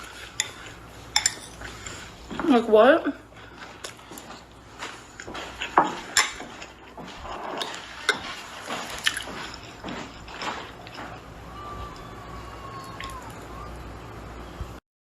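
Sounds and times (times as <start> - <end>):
utensil clinking against dish: 0.0 - 2.6, 5.2 - 11.2.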